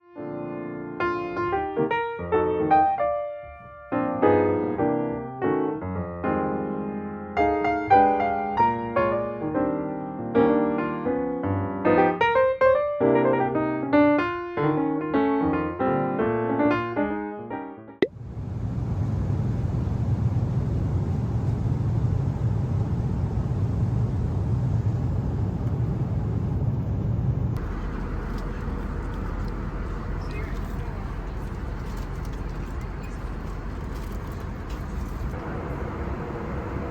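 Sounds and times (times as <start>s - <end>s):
gentle piano music: 0.0s - 18.0s
vehicle rumble: 18.2s - 36.9s.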